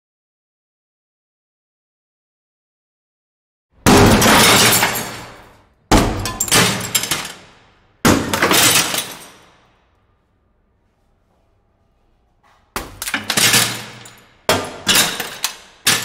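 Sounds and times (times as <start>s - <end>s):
glass shattering: 3.8s - 9.6s, 12.8s - 16.0s.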